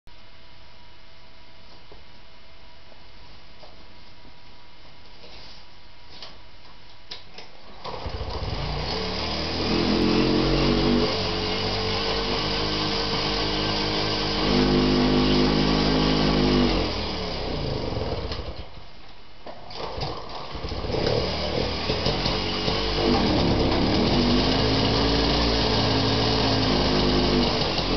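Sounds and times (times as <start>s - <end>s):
moped engine being pedaled over: 19.7s - 27.9s
moped engine firing unevenly: 19.7s - 27.9s.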